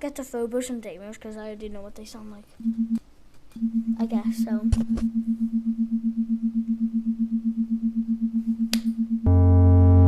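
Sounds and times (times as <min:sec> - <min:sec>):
pulsing electronic tone: 0:03.6 - 0:10.0
buzzing low electronic drone: 0:04.7 - 0:10.0.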